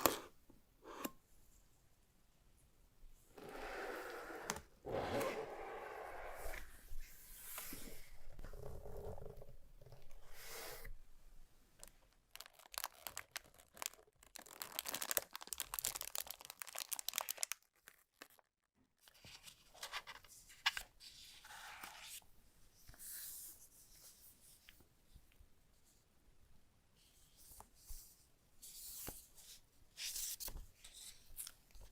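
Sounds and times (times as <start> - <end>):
packaging tearing and crinkling: 12.3 - 18.5.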